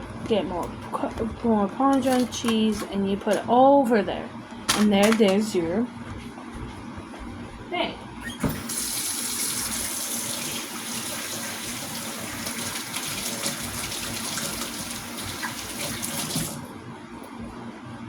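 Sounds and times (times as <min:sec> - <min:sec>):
kitchen tap running water: 0:08.4 - 0:16.8.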